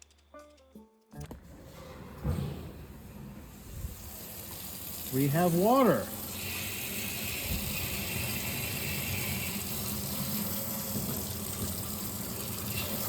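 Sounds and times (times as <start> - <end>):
water running from tap: 3.5 - 13.0.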